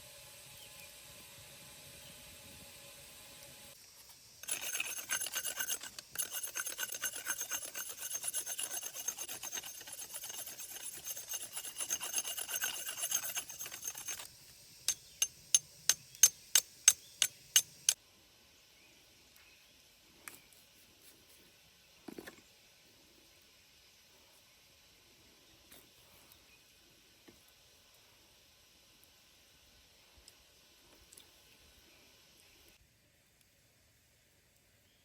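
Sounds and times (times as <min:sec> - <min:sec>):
hand tool rasping metallically: 0:04.4 - 0:14.3, 0:14.9 - 0:18.0.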